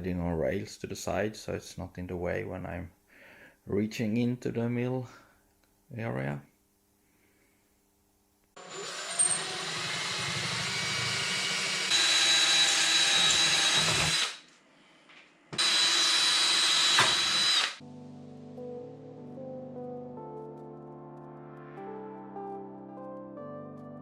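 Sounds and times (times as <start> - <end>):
power drill whining: 8.6 - 14.5, 15.6 - 17.8
background music: 17.8 - 24.0.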